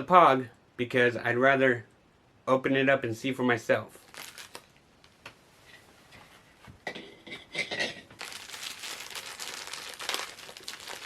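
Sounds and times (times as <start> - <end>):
can and packaging crinkling: 4.0 - 5.2, 8.1 - 11.0.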